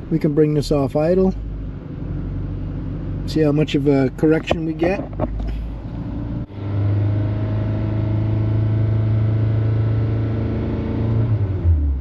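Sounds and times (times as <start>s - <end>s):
car engine humming: 0.0s - 12.0s.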